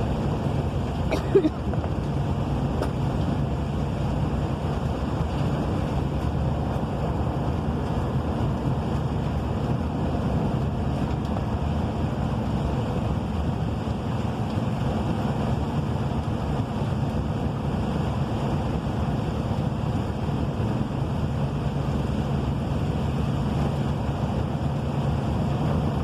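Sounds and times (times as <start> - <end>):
steady rain: 0.0 - 26.0
wind buffeting microphone: 0.0 - 26.0.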